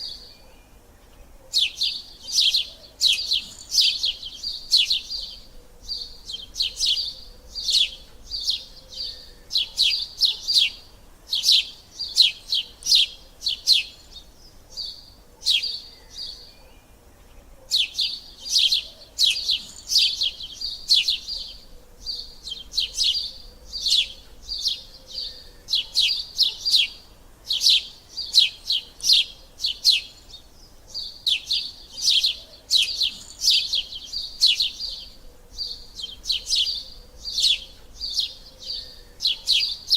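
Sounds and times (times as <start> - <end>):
sparrows chirping: 0.0 - 39.9.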